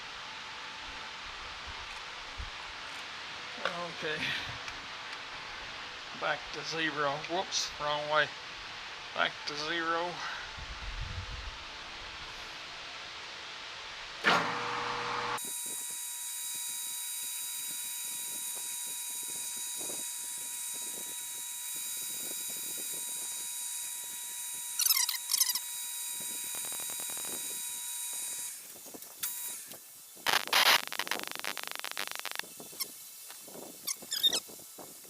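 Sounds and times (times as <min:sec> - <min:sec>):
short squeaky chirps: 0:24.8 - 0:25.7, 0:33.8 - 0:34.5.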